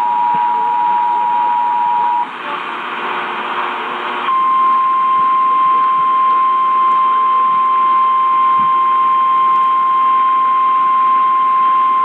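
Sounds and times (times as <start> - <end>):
radio static hiss: 0.0 - 8.9.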